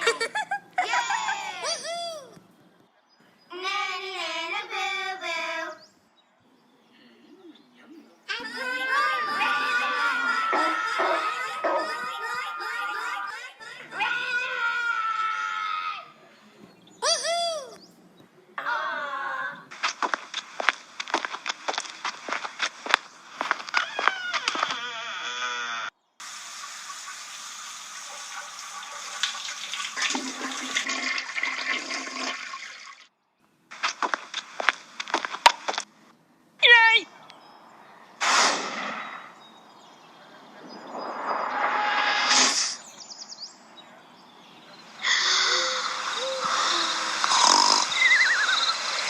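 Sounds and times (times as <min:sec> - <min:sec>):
steady hiss: 0:25.7 - 0:29.3, 0:44.8 - 0:49.0
rushing water: 0:26.2 - 0:33.1
low hoots: 0:45.0 - 0:49.0
warbling chirps: 0:45.0 - 0:49.0.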